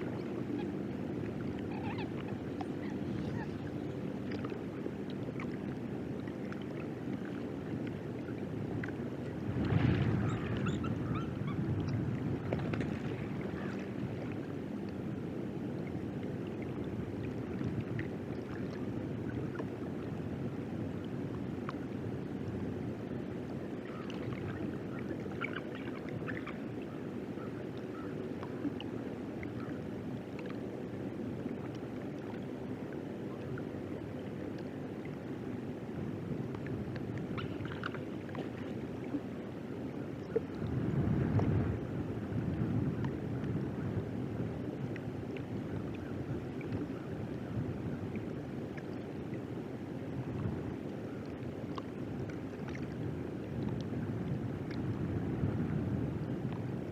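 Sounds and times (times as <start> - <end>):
wind and water rumble: 0.0 - 56.9.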